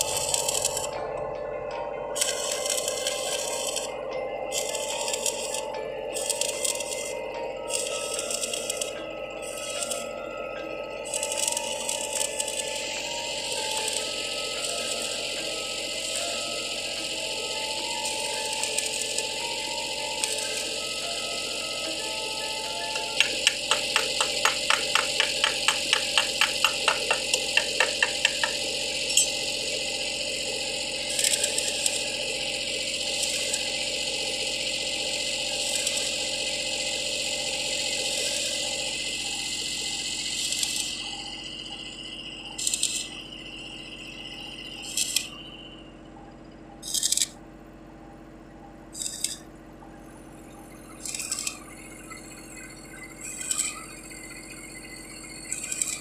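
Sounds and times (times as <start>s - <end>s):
fast clicks: 2.2s - 3.9s, 4.5s - 5.6s, 11.1s - 15.2s, 22.9s - 29.4s, 51.0s - 51.7s, 55.5s - 56.0s.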